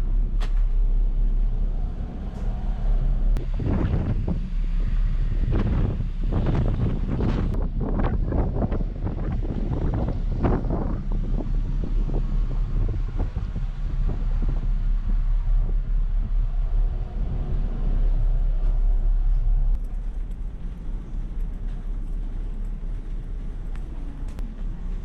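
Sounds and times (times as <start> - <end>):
ferry engines droning: 0.0 - 25.0.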